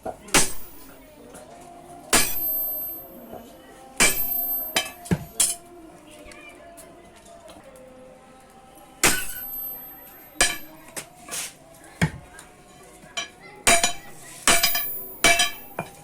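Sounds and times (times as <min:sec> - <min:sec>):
metal clanks and strikes: 0:00.0 - 0:01.0, 0:02.1 - 0:05.7, 0:09.0 - 0:11.2, 0:13.2 - 0:16.0.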